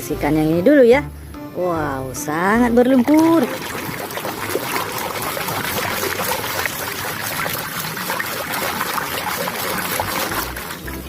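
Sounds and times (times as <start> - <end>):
water pouring and splashing: 2.9 - 11.0.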